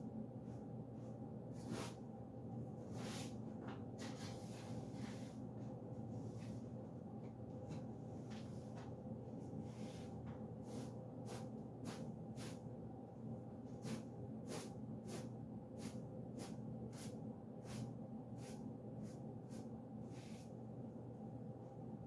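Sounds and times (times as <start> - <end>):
steady low hum: 0.0 - 22.0
scratchy cleaning strokes: 9.7 - 12.6, 13.8 - 20.6.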